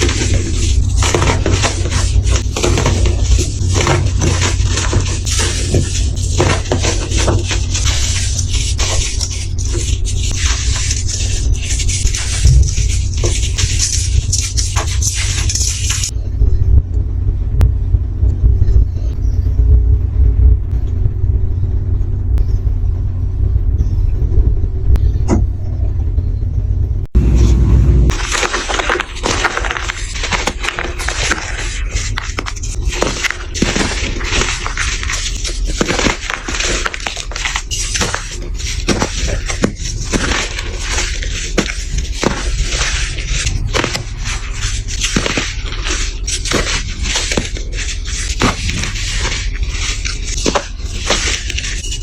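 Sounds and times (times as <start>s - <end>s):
crunchy solid being crushed: 0.0s - 16.2s, 28.1s - 52.0s
faint hum: 0.0s - 52.0s
loud steady low rumble: 0.0s - 52.0s.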